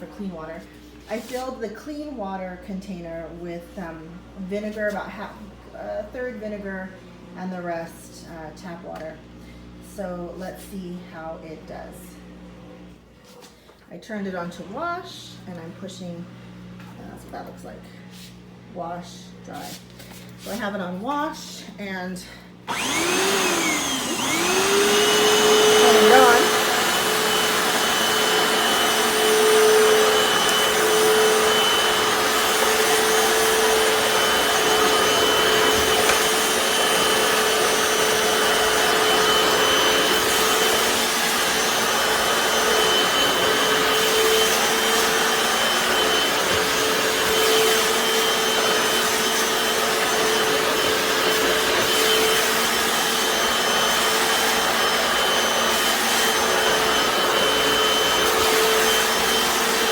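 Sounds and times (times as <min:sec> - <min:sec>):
scrub brushes on tile: 0:00.6 - 0:01.6, 0:19.5 - 0:20.8, 0:22.8 - 0:59.9
floor cleaner motor humming: 0:22.7 - 0:59.9.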